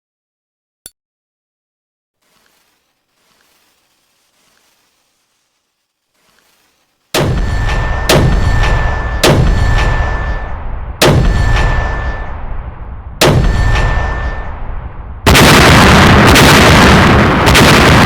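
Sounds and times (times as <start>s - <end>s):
fireworks booming: 7.1s - 18.0s.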